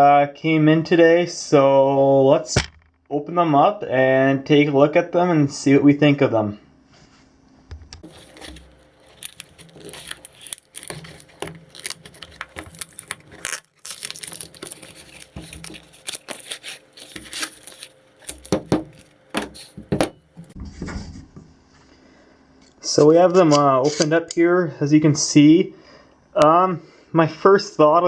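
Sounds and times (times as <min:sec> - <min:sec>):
packaging tearing and crinkling: 0:08.0 - 0:20.6.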